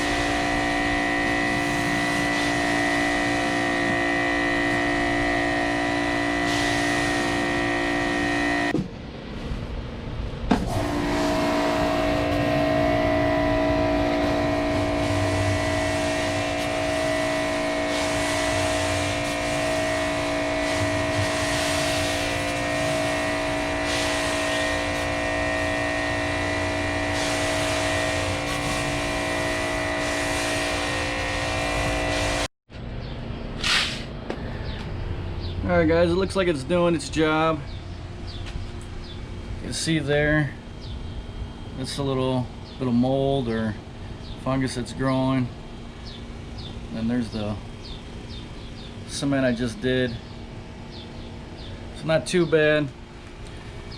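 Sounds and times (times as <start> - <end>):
pressure washer whine: 0.0 - 53.9.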